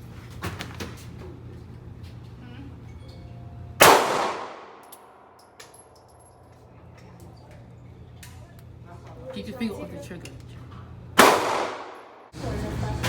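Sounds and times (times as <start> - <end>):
gunshot: 3.8 - 4.8, 11.2 - 12.3.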